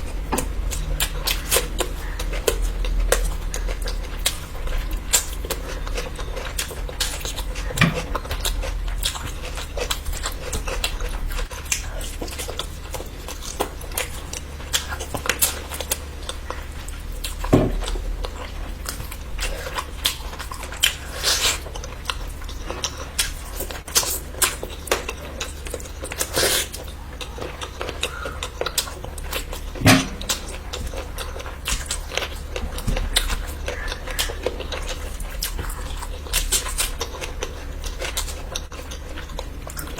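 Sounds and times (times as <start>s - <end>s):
steady low hum: 0.0s - 39.9s
wet chewing and biting: 0.0s - 39.9s
low thumps: 29.6s - 31.4s.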